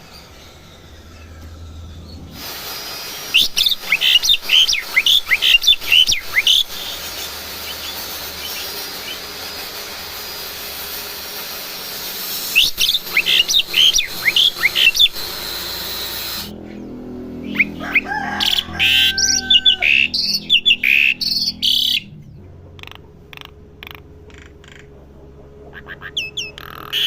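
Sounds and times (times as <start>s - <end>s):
bird whistled chirps: 3.2s - 9.8s, 12.3s - 15.5s, 17.4s - 22.1s.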